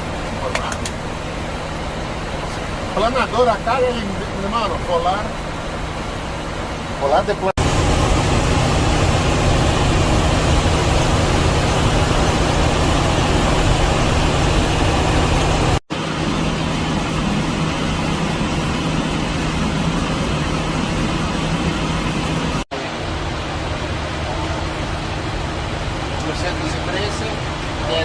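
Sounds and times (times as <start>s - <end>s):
cockpit airflow rush: 0.0s - 28.0s
low hum: 7.6s - 28.0s.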